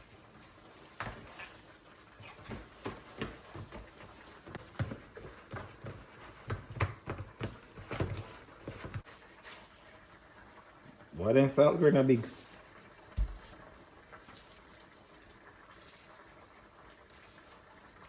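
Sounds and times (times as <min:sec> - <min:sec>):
utensil knocking and scraping in pot: 0:02.4 - 0:09.1.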